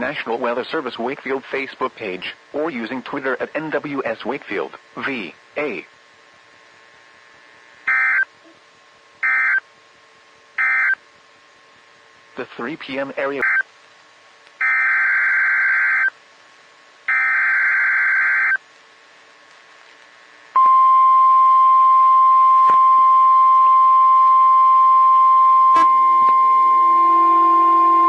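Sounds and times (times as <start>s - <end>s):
steady warning alarm tone: 7.9s - 8.3s, 9.2s - 9.6s, 10.6s - 11.0s, 13.4s - 13.6s, 14.6s - 16.1s, 17.1s - 18.6s, 20.6s - 28.0s
screeching digital data bursts: 14.6s - 16.1s
low hum: 20.1s - 28.0s.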